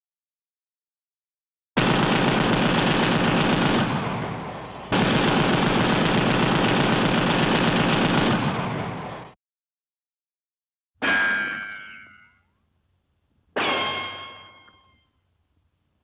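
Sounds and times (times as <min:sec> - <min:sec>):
machine-gun fire: 0:01.8 - 0:09.3.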